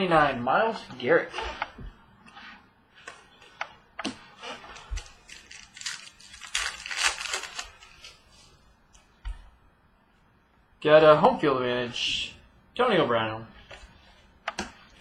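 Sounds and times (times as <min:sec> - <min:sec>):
trading cards clicking and rustling: 0:04.8 - 0:08.2.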